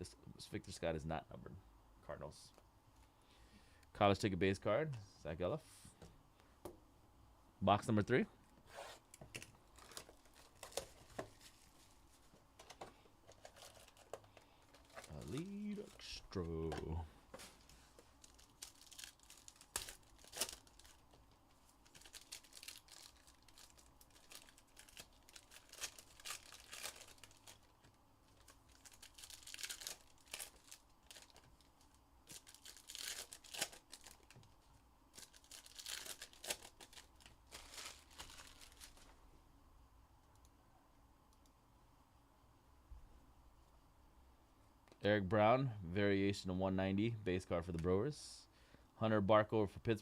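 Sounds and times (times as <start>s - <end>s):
tearing card packaging: 18.2s - 21.1s, 21.9s - 27.7s, 28.4s - 31.4s, 32.2s - 34.4s, 35.1s - 39.0s.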